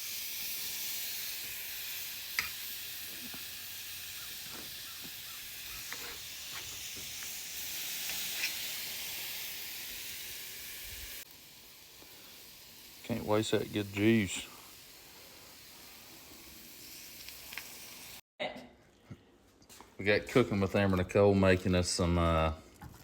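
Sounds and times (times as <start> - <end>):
steaks sizzling on grill: 0.0 - 18.2
fat spitting crackles: 11.9 - 18.2.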